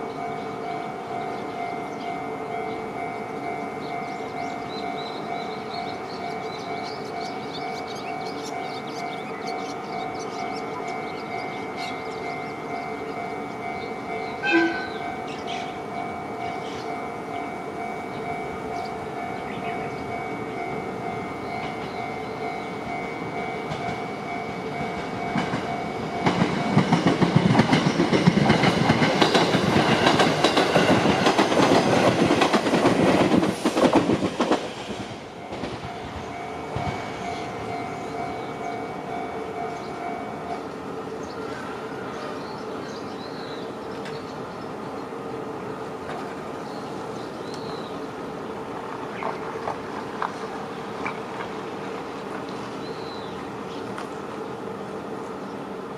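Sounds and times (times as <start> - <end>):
crossing warning bell ringing: 0.0 - 33.4, 35.3 - 48.4
train passing loudly: 0.0 - 55.9
train horn blast: 14.2 - 15.7.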